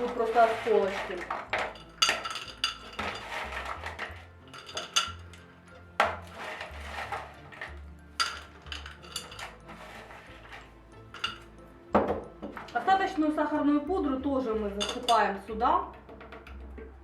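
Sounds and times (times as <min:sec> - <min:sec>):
candies clinking in glass jar: 0:00.0 - 0:11.6, 0:14.7 - 0:15.2.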